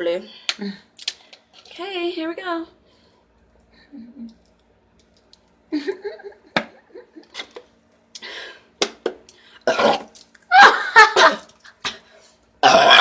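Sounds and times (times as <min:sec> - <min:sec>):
woman burping: 0:09.7 - 0:11.5, 0:12.6 - 0:13.0.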